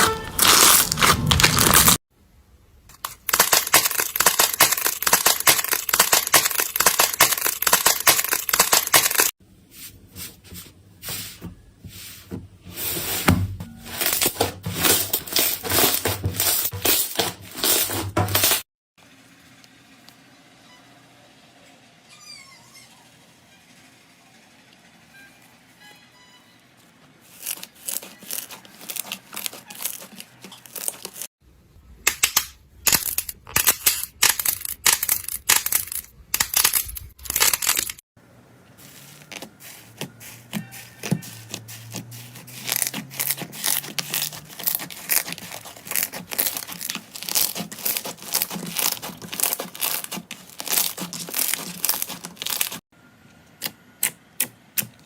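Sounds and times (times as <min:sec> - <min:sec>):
slime crackling and popping: 0:00.4 - 0:02.0, 0:41.9 - 0:52.8.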